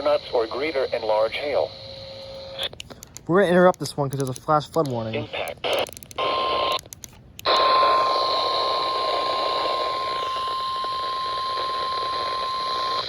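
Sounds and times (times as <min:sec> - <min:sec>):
radio static: 0:00.0 - 0:02.7, 0:04.9 - 0:06.8, 0:07.5 - 0:13.0
steady alarm tone: 0:07.5 - 0:13.0.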